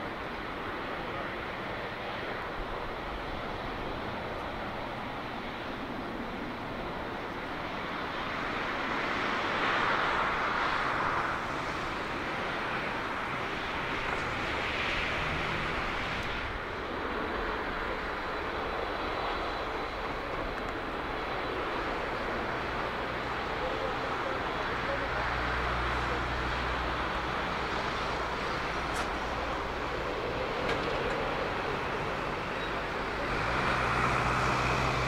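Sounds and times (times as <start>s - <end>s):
jet engines rushing: 0.0s - 35.0s.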